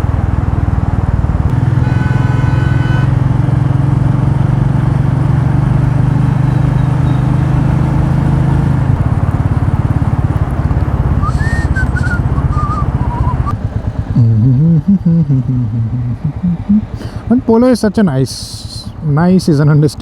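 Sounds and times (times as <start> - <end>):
motorcycle engine running: 0.0 - 20.0
person speaking: 14.2 - 20.0.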